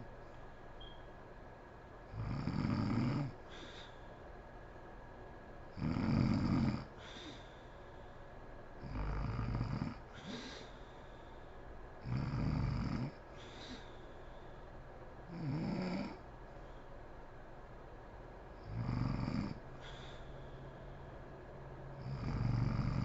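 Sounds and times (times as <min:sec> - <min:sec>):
woman snoring: 0:02.1 - 0:03.4, 0:05.8 - 0:07.4, 0:08.8 - 0:10.7, 0:12.0 - 0:13.8, 0:15.3 - 0:16.2, 0:18.6 - 0:19.6, 0:22.0 - 0:23.0.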